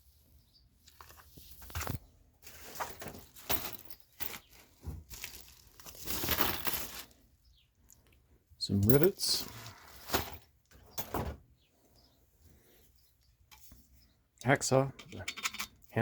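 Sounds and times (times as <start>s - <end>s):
rustling of tool packaging: 0.8s - 8.1s, 8.8s - 11.2s.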